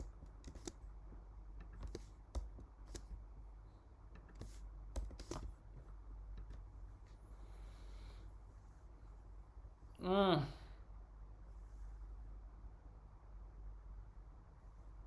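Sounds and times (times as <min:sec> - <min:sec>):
keyboard key clicks: 0:00.0 - 0:00.8
low steady hum: 0:00.0 - 0:15.0.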